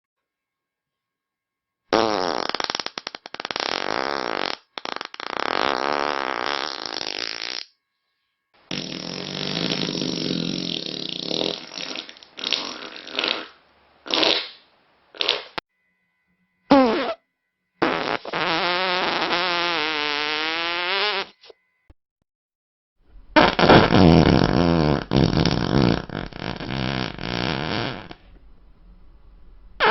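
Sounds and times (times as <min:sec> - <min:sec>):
fart sound effects: 0:01.9 - 0:07.7, 0:08.7 - 0:14.6, 0:15.2 - 0:15.6, 0:16.7 - 0:17.2, 0:17.8 - 0:21.6, 0:23.3 - 0:28.3.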